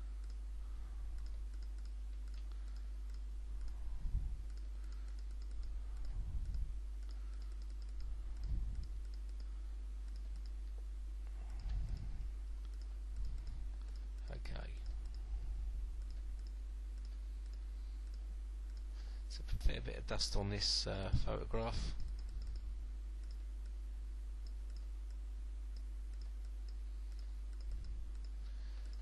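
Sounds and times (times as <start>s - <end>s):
soft low thumps: 0.0s - 18.9s
steady low hum: 0.0s - 29.0s.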